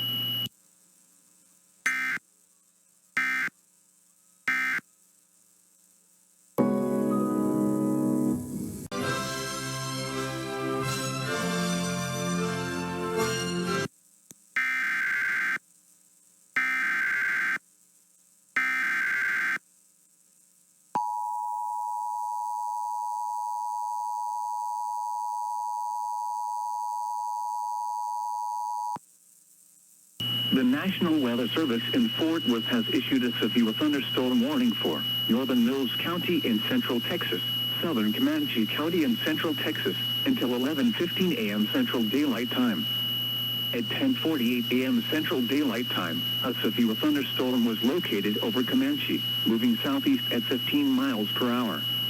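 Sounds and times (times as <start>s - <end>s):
music: 6.6s - 13.9s
steady hum: 30.2s - 52.0s
warbling data bursts: 30.2s - 52.0s.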